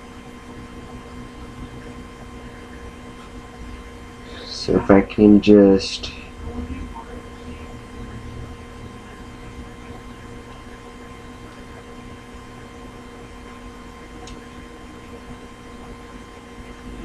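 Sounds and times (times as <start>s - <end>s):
steady electrical hum: 0.0s - 17.0s.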